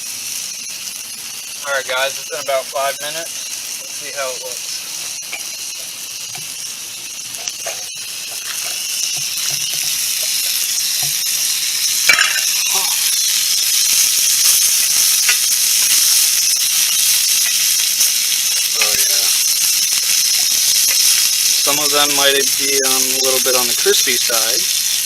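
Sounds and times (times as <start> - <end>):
food sizzling and frying: 0.0 - 25.0.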